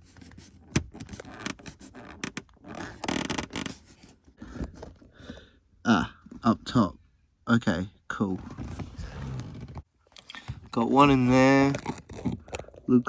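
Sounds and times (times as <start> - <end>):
plastic trim scraping and rustling: 0.0 - 4.2.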